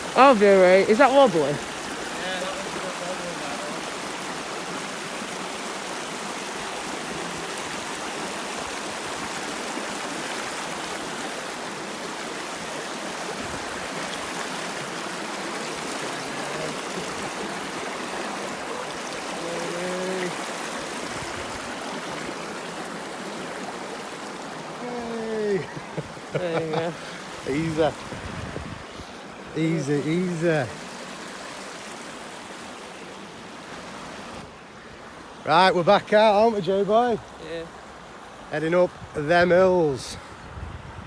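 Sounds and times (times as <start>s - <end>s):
stream flowing: 0.0s - 41.0s.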